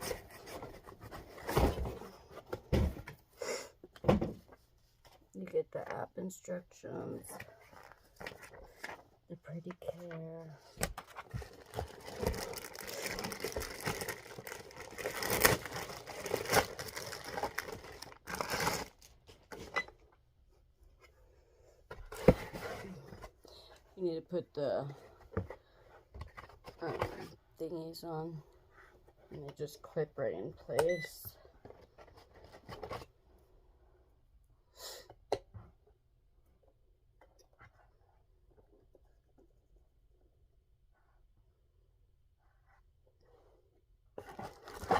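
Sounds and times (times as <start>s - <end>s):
packaging rustling and crinkling: 10.9s - 19.7s, 44.2s - 44.9s.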